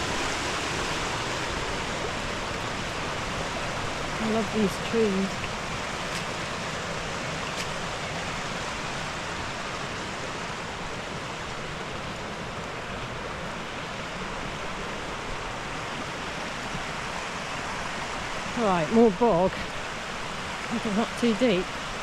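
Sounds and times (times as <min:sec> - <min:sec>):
flowing water rushing: 0:00.0 - 0:22.0.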